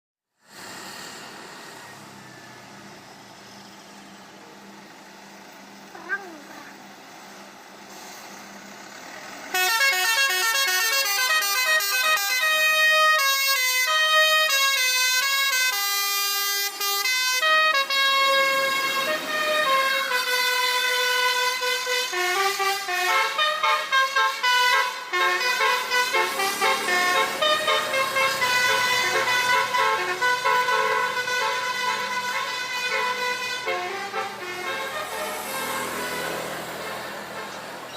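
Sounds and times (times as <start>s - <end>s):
musical bus air horn melody: 9.5s - 37.9s.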